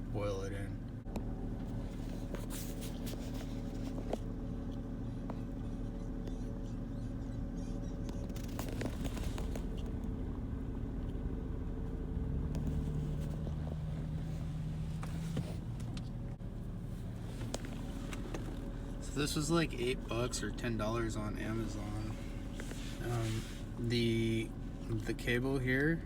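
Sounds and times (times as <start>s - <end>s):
car engine idling: 0.0s - 26.0s
faint clicks and scrapes: 1.7s - 10.0s, 17.2s - 18.7s, 21.7s - 23.7s.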